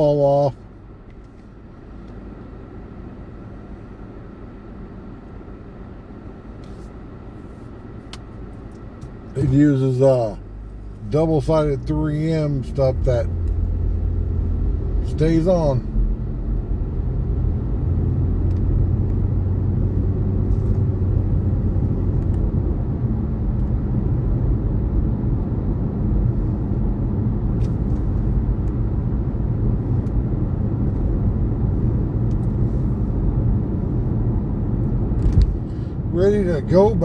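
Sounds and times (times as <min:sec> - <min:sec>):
car cabin engine and road noise: 0:00.0 - 0:37.0.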